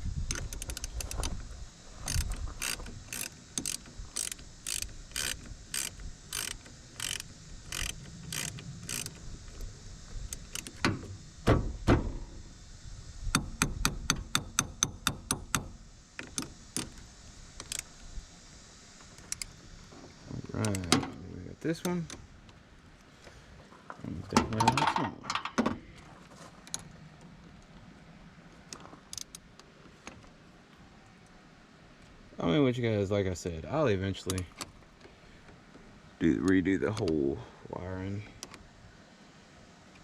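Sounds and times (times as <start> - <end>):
ratchet wrench clicking: 0.2 - 11.1, 13.3 - 18.0, 19.1 - 19.6, 20.6 - 21.1, 28.8 - 29.4.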